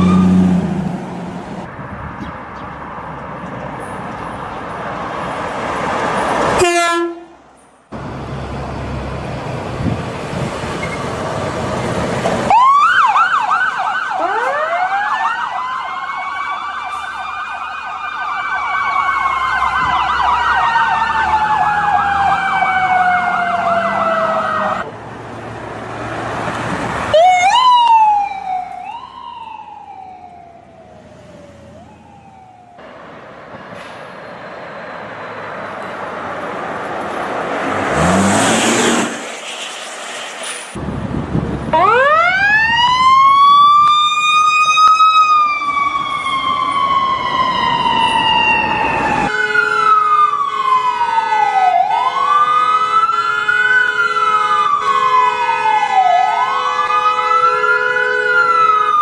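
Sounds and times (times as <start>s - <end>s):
ambulance siren: 0.0s - 0.7s, 12.4s - 24.9s, 27.0s - 33.2s, 41.6s - 59.0s
street noise: 0.0s - 59.0s.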